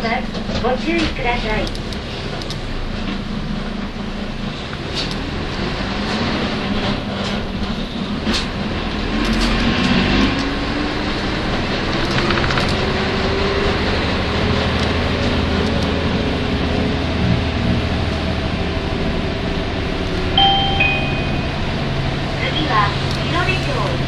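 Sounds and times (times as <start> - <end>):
bus diesel engine accelerating: 0.0 - 24.0
sharp clicks: 1.6 - 2.6, 9.2 - 9.6, 11.9 - 12.9, 15.6 - 16.0
rising whine: 9.0 - 23.1.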